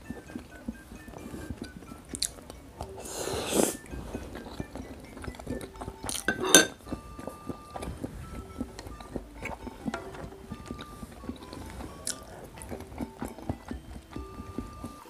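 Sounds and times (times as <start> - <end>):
chewing: 0.0 - 15.0
soft background music: 0.0 - 15.0
utensils clinking against a bowl: 0.0 - 15.0.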